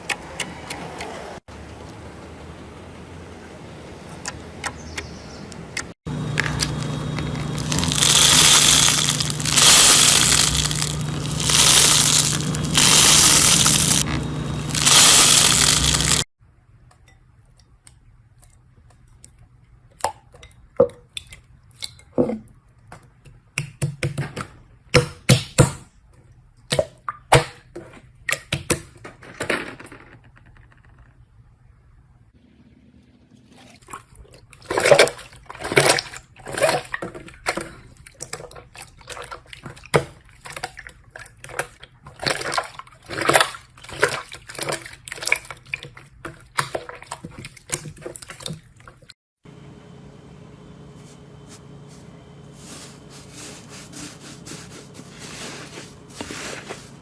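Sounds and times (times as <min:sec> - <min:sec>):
steady low hum: 0:06.1 - 0:16.2
slime crackling and hissing: 0:06.4 - 0:16.3.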